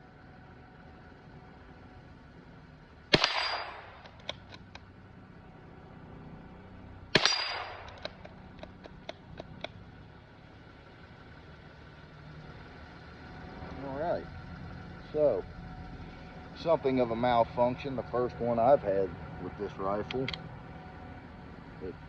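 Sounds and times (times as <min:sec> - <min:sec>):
rifle shots with echo: 0:03.1 - 0:04.2, 0:07.1 - 0:08.2.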